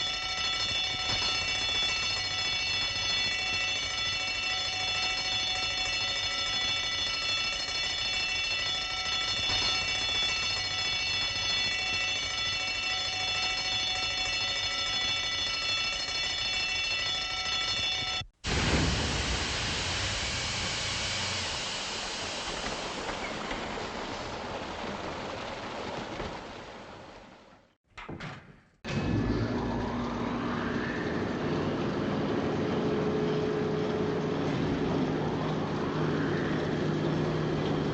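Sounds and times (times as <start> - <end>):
bell ringing continuously: 0.0 - 18.2
loud rushing hiss: 18.4 - 23.7.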